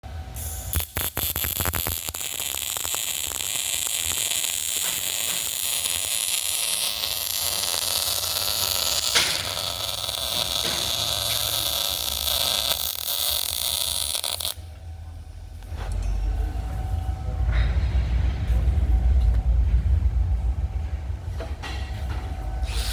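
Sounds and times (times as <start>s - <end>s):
welding arc crackling hiss: 0.3s - 14.6s, 22.6s - 22.9s
arc striking clicks: 0.7s - 14.6s.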